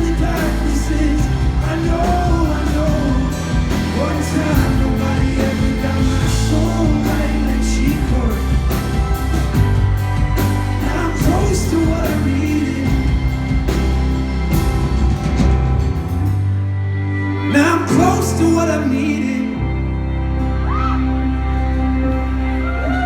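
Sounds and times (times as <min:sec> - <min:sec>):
wordless singing: 0:00.0 - 0:14.5
drums steady beat: 0:00.0 - 0:16.4
sustained bass: 0:00.0 - 0:23.0.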